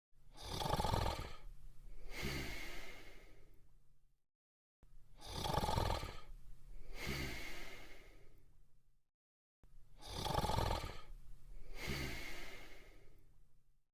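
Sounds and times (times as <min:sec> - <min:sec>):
cartoon character snoring: 0:00.3 - 0:03.3, 0:05.2 - 0:08.2, 0:10.0 - 0:13.0.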